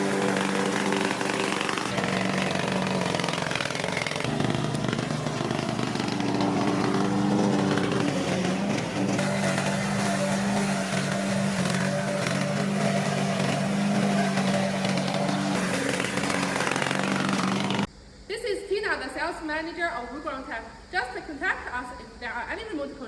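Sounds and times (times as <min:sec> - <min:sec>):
lawn mower engine running: 0:00.0 - 0:17.9.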